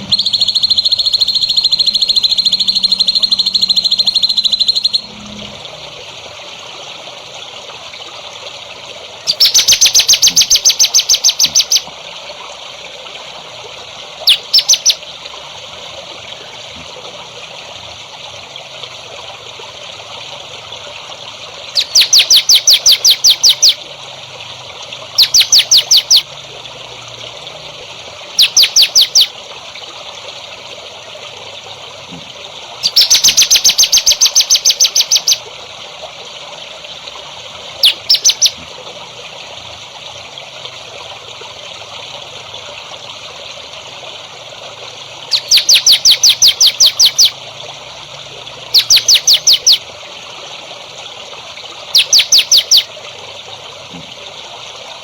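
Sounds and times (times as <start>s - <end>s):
songbird trilling: 0.0s - 5.2s, 9.3s - 11.8s, 14.3s - 15.0s, 21.8s - 23.8s, 25.2s - 26.2s, 28.4s - 29.3s, 32.8s - 35.4s, 37.8s - 38.6s, 45.3s - 47.4s, 48.8s - 49.8s, 52.0s - 52.9s
trickling water: 0.0s - 55.0s.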